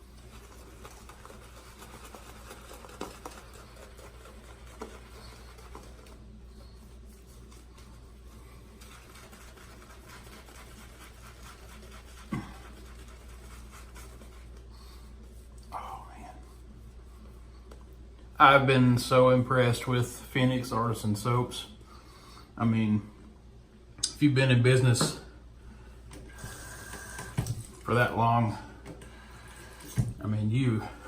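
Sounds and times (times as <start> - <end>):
shaving brush swishing lather: 0.0 - 15.6.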